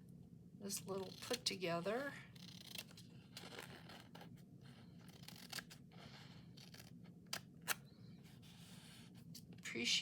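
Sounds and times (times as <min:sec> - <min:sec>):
scissors cutting paper: 0:02.4 - 0:04.3, 0:04.9 - 0:07.8.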